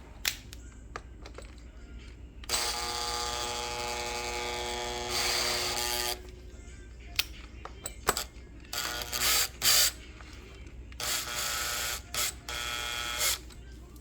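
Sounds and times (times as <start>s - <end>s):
clicks and knocks of parts: 0.2s - 2.1s.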